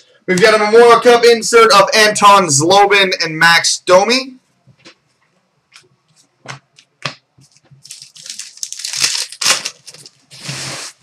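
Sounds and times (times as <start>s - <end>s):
cards crinkling and rustling: 7.4s - 10.8s
sliding hiss: 10.3s - 11.0s.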